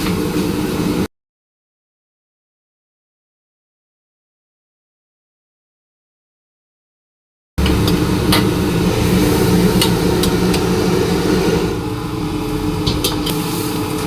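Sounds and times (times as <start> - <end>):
low mechanical hum: 7.6 - 14.0.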